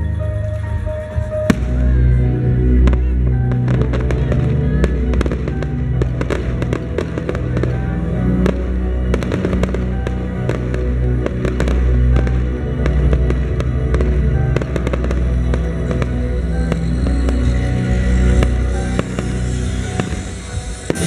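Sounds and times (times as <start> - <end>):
music with long low notes: 0.0 - 21.0
fireworks bangs and crackles: 0.1 - 21.0.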